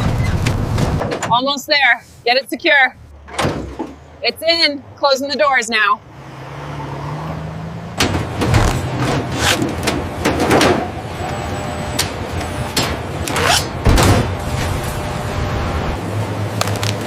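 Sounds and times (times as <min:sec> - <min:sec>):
cargo doors clanking shut: 0:03.2 - 0:04.1, 0:08.0 - 0:11.0, 0:12.0 - 0:14.4.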